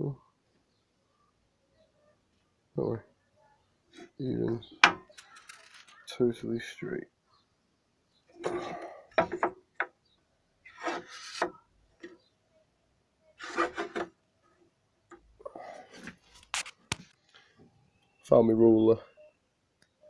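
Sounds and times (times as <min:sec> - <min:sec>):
wood scraping and rubbing: 0:10.7 - 0:11.6, 0:13.4 - 0:14.1.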